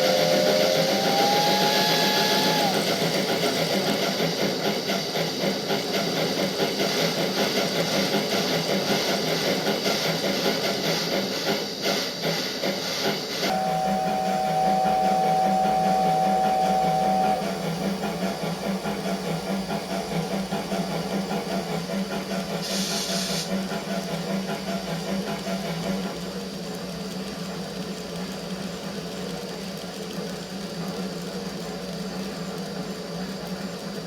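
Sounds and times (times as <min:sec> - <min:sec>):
two-note steam whistle: 0:00.0 - 0:03.2, 0:13.4 - 0:20.3
steam hiss: 0:00.0 - 0:34.0
steam locomotive chuffing: 0:00.0 - 0:34.0
train running noise: 0:00.0 - 0:34.0.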